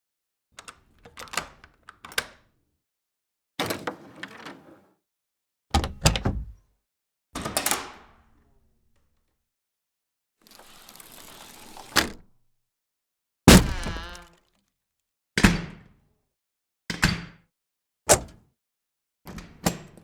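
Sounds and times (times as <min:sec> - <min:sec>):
door latch knocks: 0:05.8 - 0:06.6
sharp thud: 0:13.5 - 0:14.2
door scraping: 0:13.5 - 0:14.3
loud door bang: 0:13.5 - 0:14.3
short rasping sound: 0:13.5 - 0:14.3.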